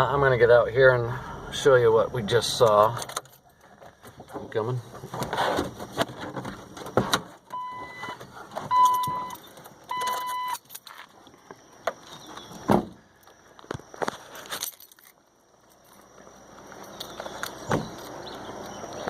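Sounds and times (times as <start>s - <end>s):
car warning chime: 7.5s - 10.6s
loud thump: 12.7s - 13.0s.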